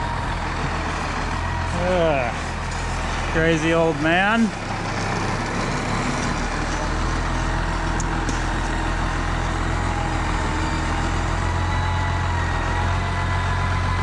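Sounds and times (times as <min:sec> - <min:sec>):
tractor diesel engine running: 0:00.0 - 0:14.0.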